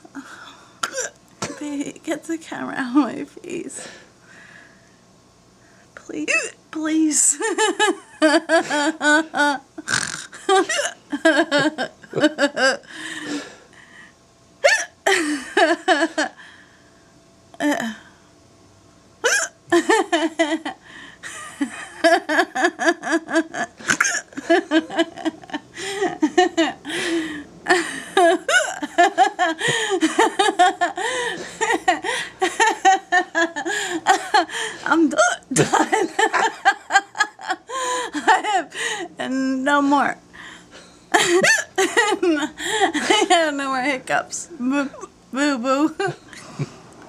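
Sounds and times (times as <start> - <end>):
woman hiccuping: 0.8 - 1.6, 9.8 - 11.0, 14.6 - 15.1, 19.2 - 19.6, 23.8 - 24.3, 34.8 - 35.9, 46.0 - 46.4
woman laughing: 7.4 - 9.7, 10.4 - 12.9, 14.7 - 16.4, 19.7 - 39.1, 41.1 - 43.7, 45.8 - 46.4.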